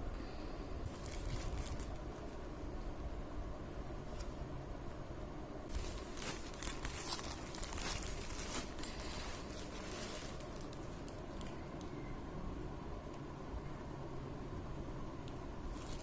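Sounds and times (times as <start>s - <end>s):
rustling and crinkling: 0.8s - 2.4s, 4.0s - 4.4s, 5.7s - 11.9s, 15.7s - 16.0s.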